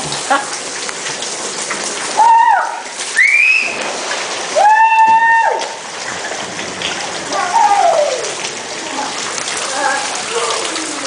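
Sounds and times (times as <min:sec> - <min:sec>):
heavy rain pouring: 0:00.0 - 0:11.0
children shrieking: 0:04.6 - 0:05.8, 0:07.3 - 0:08.4.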